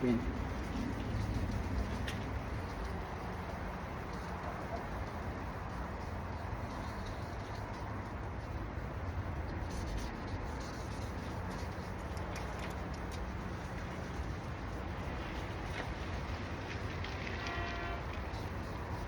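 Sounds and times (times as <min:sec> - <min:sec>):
sandpaper scrubbing plastic: 0:02.8 - 0:16.0.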